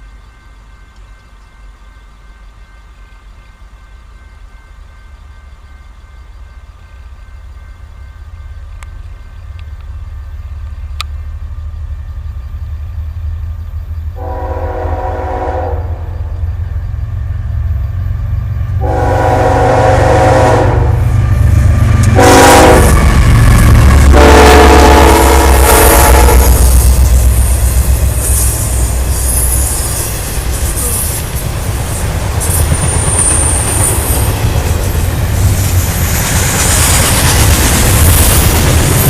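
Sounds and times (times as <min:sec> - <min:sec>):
low train rumble: 0:00.0 - 0:39.0
train air horn blasts: 0:14.2 - 0:16.2, 0:18.8 - 0:21.1, 0:22.1 - 0:23.1, 0:23.9 - 0:27.2.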